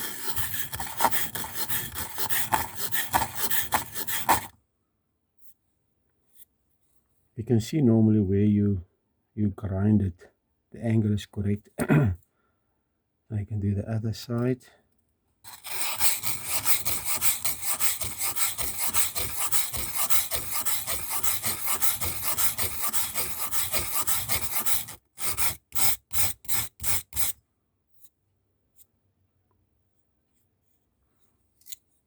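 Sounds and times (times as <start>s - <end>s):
blade scraping on sharpening stone: 0.0s - 4.5s, 15.5s - 27.3s.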